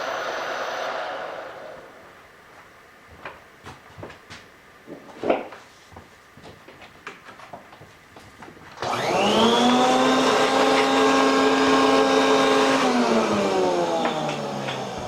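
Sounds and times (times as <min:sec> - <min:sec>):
milling machine motor whining: 0:00.0 - 0:02.0, 0:08.8 - 0:15.0.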